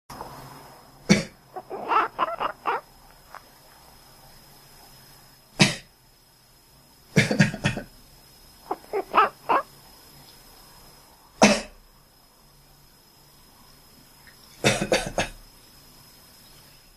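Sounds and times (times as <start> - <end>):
person coughing: 11.4 - 11.8, 14.7 - 15.4.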